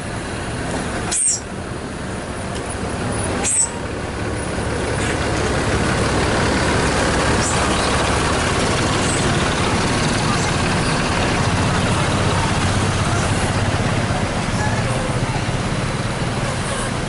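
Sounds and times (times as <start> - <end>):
bus diesel engine running: 0.0 - 17.0.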